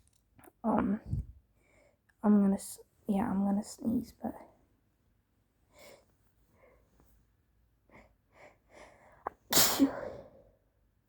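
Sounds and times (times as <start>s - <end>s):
faint in-breaths: 1.6s - 2.1s, 5.7s - 7.0s, 7.8s - 10.7s
woman sneezing: 9.3s - 10.2s.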